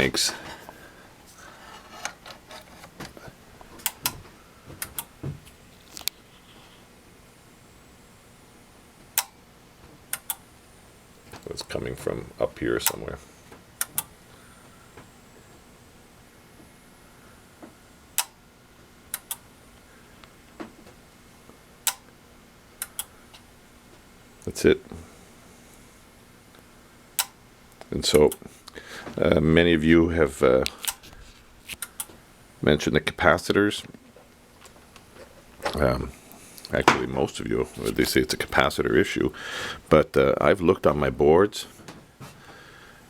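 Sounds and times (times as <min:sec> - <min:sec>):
television clicking: 0:02.0 - 0:06.2, 0:09.0 - 0:10.5, 0:12.8 - 0:14.2, 0:19.1 - 0:19.5, 0:21.8 - 0:22.2, 0:22.8 - 0:23.5, 0:27.2 - 0:28.5, 0:30.6 - 0:32.2.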